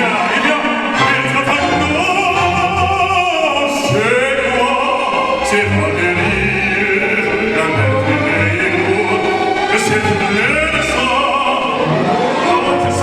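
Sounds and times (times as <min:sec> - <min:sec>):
operatic singing: 0:00.0 - 0:13.0.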